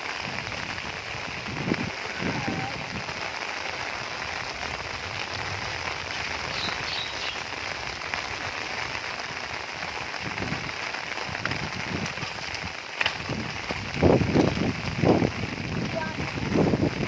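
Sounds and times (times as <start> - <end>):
heavy rain falling: 0.0 - 17.0.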